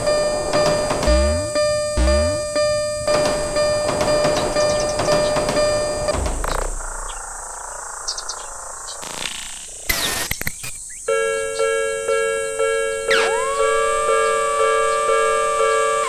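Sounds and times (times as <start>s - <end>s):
level-crossing warning bell ringing: 0.0s - 6.2s, 11.1s - 16.0s
clicks: 0.5s - 6.7s
tone gliding up in pitch: 0.6s - 3.1s, 13.0s - 16.0s.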